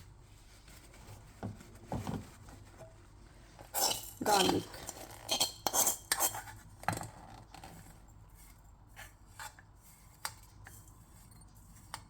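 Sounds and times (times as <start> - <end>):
spoon scraping glass jar: 3.8 - 6.5.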